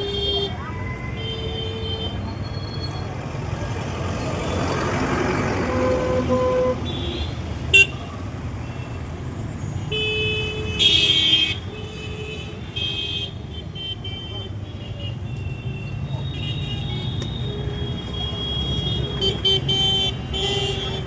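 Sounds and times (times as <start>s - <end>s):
heavy road traffic: 0.0s - 21.0s
car horns honking: 5.3s - 8.9s, 9.9s - 21.0s.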